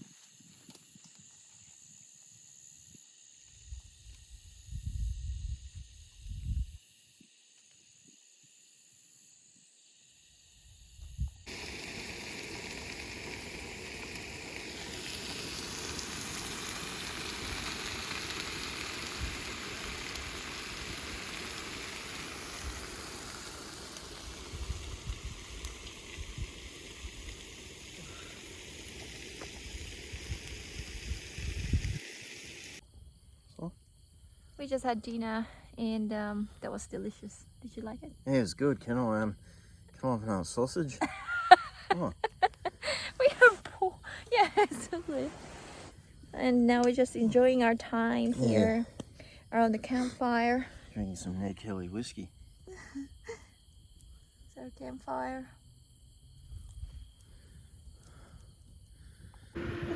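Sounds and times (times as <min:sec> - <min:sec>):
insect chirping: 0:00.0 - 0:59.9
meat sizzling with pops: 0:11.1 - 0:32.8, 0:40.5 - 0:50.5, 0:56.6 - 0:59.9.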